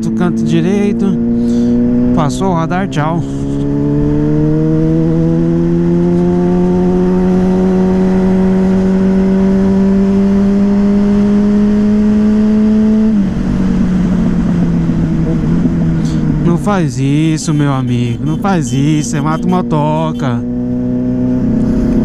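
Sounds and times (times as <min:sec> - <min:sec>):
motorcycle engine accelerating: 0:00.0 - 0:22.0.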